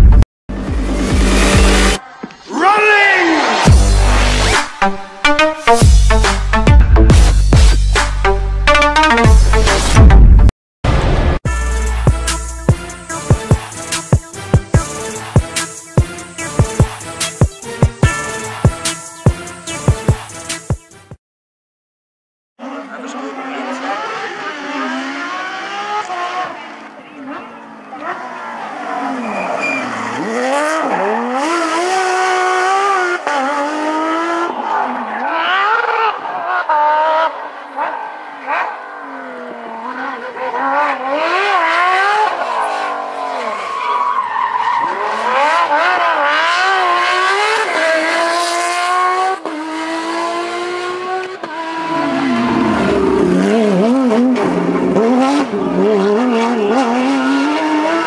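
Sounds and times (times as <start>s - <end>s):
rally car engines revving: 3.2s - 4.5s, 22.6s - 58.0s.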